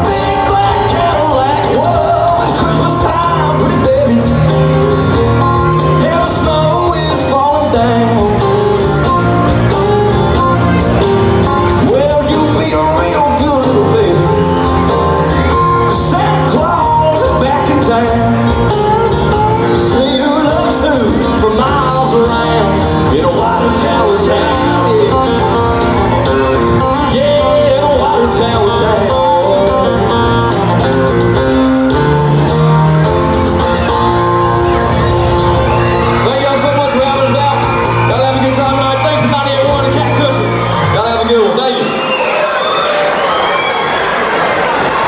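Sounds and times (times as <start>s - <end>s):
man singing: 0.0s - 9.5s, 11.7s - 31.2s, 35.9s - 41.9s
country band playing: 0.0s - 45.0s.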